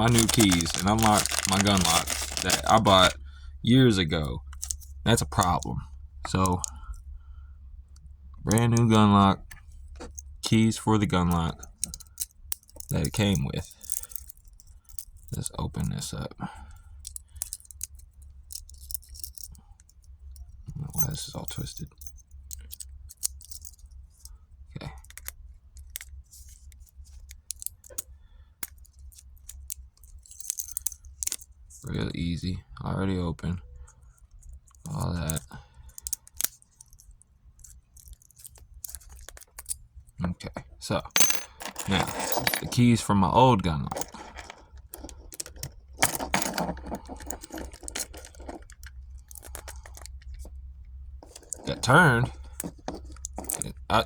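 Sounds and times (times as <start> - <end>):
key scraping in lock: 0.0 - 3.2, 34.8 - 39.8, 41.1 - 42.9, 43.9 - 50.6, 51.2 - 54.0
keys jingling: 0.0 - 3.2, 41.0 - 43.0, 43.8 - 50.6, 51.2 - 54.0
metallic clicks of key in lock: 44.0 - 50.5.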